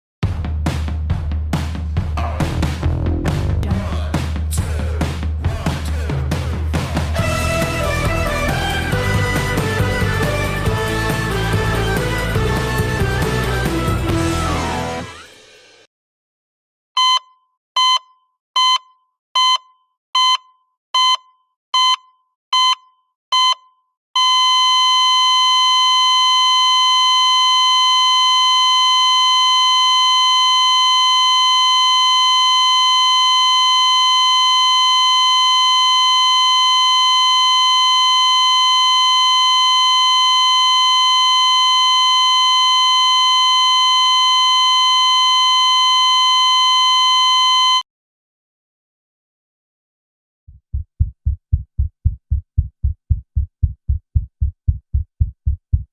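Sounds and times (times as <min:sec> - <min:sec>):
heart monitor beeps: 0:17.0 - 0:47.8
continuous flatline tone: 0:24.5 - 0:47.8.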